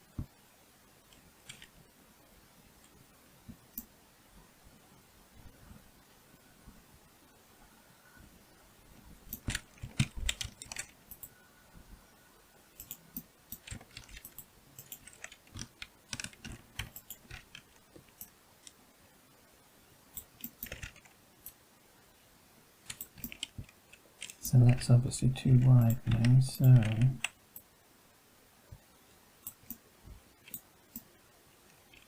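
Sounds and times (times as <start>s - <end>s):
keyboard keys clicking: 1.5s - 1.7s, 9.3s - 11.3s, 12.8s - 18.8s, 20.2s - 21.2s, 22.9s - 24.8s, 25.6s - 27.4s.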